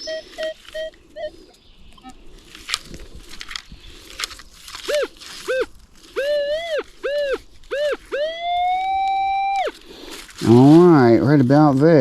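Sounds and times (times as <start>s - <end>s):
metal detector steady tone: 0.0s - 2.2s, 4.9s - 9.8s
metal detector tones: 0.0s - 2.2s, 4.9s - 9.8s.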